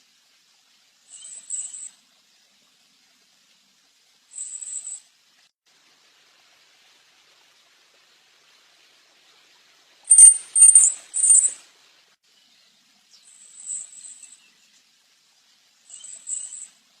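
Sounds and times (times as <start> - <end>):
bird singing high notes: 10.1 - 11.6.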